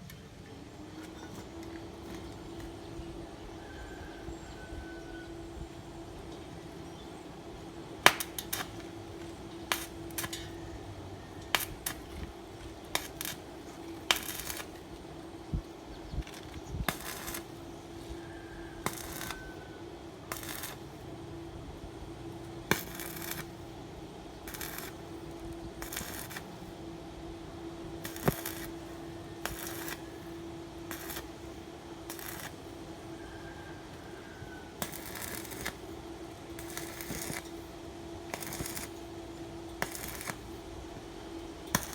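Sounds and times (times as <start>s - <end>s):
steady electrical hum: 0.0s - 41.9s
welding hiss bursts: 8.0s - 10.8s, 11.4s - 15.6s, 16.2s - 21.6s, 22.6s - 26.9s, 27.9s - 33.2s, 33.8s - 41.0s, 41.6s - 41.9s.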